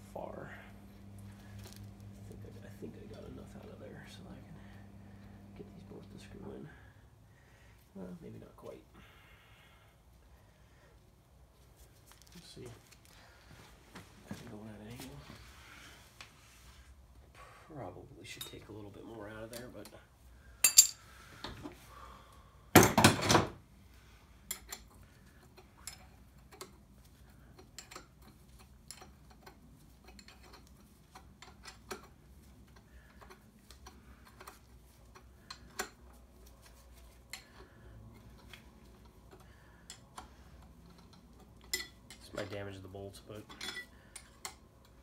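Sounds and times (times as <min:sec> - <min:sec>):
steel tools clinking on metal: 0:20.6 - 0:21.0, 0:40.9 - 0:44.6.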